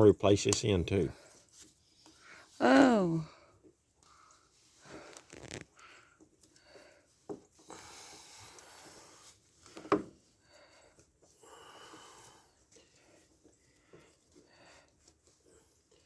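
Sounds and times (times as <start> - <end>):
rustling and rubbing: 4.5 - 5.8.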